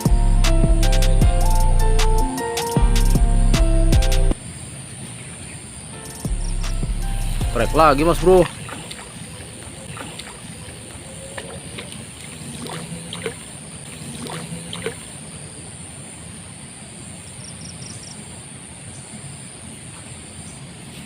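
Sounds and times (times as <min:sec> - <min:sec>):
flowing river water: 0:06.9 - 0:21.0.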